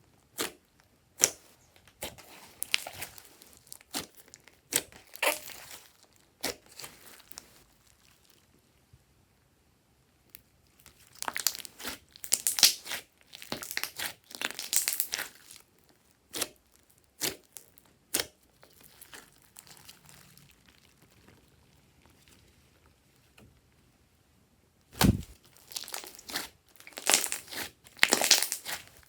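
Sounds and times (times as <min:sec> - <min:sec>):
slime crackling: 0:02.0 - 0:08.2, 0:10.9 - 0:15.6, 0:25.0 - 0:29.0
slime pops: 0:25.0 - 0:25.4.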